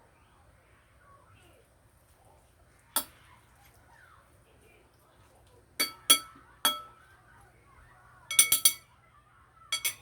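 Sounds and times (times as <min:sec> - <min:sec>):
dishes clinking: 0:05.8 - 0:07.0, 0:08.3 - 0:08.9, 0:09.7 - 0:10.0.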